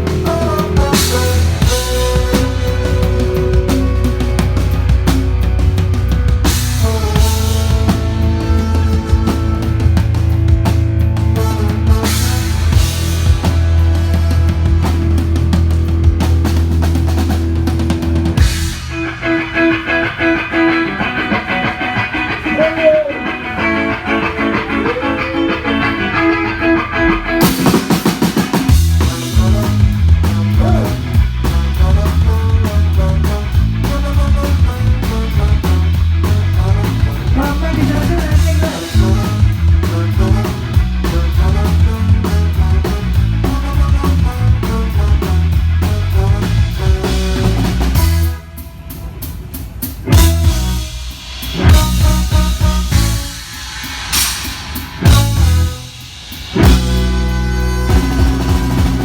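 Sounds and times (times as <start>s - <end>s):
loud rock music: 0.0s - 59.0s
loud drum hits: 50.1s - 59.0s.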